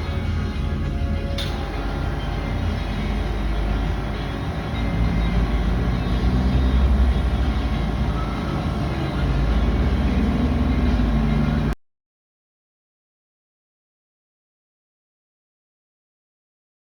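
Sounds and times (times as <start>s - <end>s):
hydraulic pump droning: 0.0s - 11.8s.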